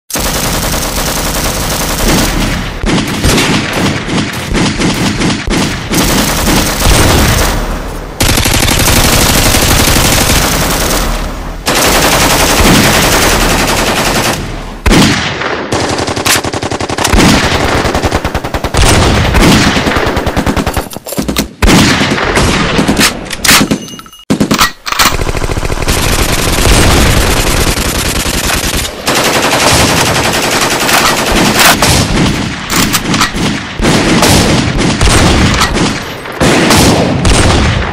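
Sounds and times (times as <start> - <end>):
machine-gun bursts: 0.1 - 14.4, 15.7 - 21.4, 22.8 - 31.8
single gunshots: 2.0 - 8.4, 14.3 - 15.8, 21.2 - 24.8, 31.2 - 37.9.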